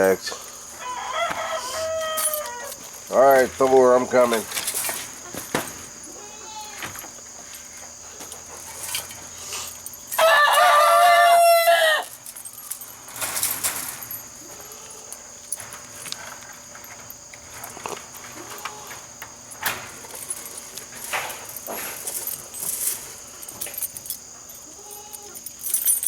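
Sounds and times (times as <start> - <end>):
rooster crowing: 0.7 - 2.8, 10.1 - 12.2.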